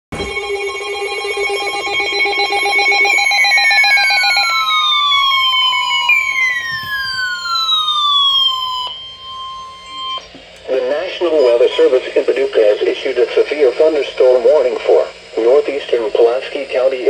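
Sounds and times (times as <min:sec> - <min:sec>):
pulsing bell-like alert buzz: 0:00.1 - 0:10.3
falling electronic alert sweeps: 0:00.1 - 0:12.7
steady electronic tone: 0:00.1 - 0:17.0.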